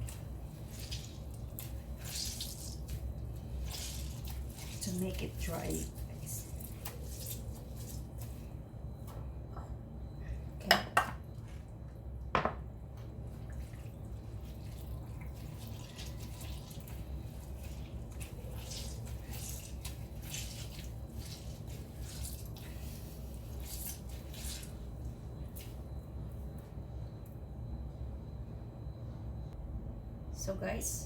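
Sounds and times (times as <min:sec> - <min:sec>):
water dripping and trickling: 0:00.0 - 0:08.0, 0:13.4 - 0:22.8.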